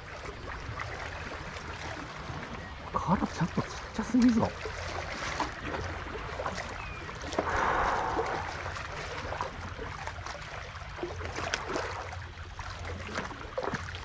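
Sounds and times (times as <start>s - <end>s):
seawater sloshing among concrete blocks: 0.0s - 14.0s
water splash: 3.6s - 14.0s.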